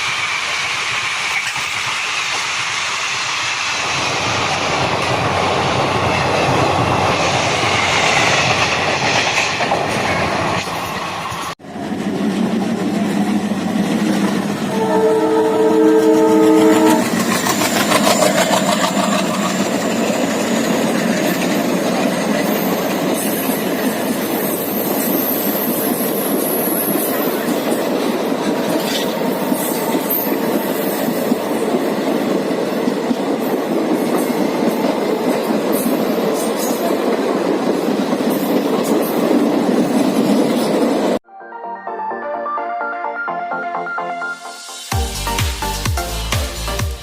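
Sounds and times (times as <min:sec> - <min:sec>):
train coaches rattling over rails: 0:00.0 - 0:41.2
locomotive horn: 0:14.6 - 0:17.3.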